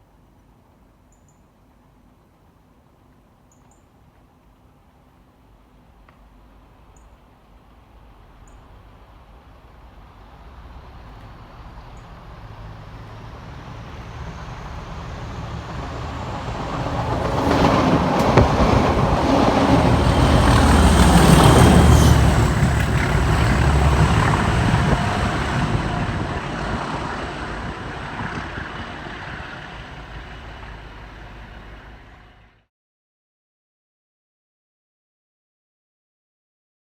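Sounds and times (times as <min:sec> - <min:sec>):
diesel locomotive engine growling: 0:08.2 - 0:32.6
train wheels rumbling on rail: 0:08.2 - 0:32.6.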